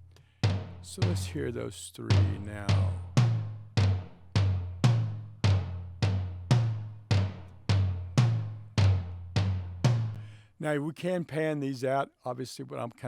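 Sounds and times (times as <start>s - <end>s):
tom-tom drum hits: 0.4s - 10.2s.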